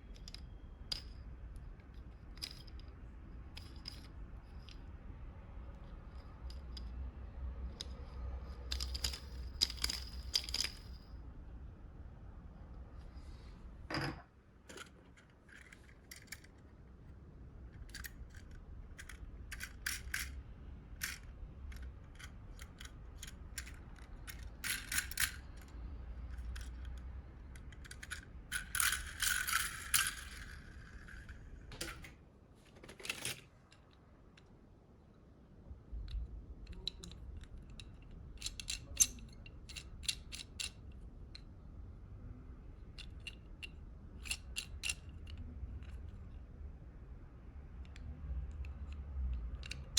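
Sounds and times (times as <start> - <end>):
toy cars clattering: 0.0 - 4.9, 5.7 - 7.0, 7.6 - 11.0, 14.0 - 20.4, 21.0 - 34.0, 36.0 - 40.9, 42.9 - 46.3, 47.8 - 49.9
toy cars clinking in a box: 7.8 - 11.0, 17.8 - 20.4, 21.0 - 31.4, 36.7 - 40.8, 43.0 - 46.2.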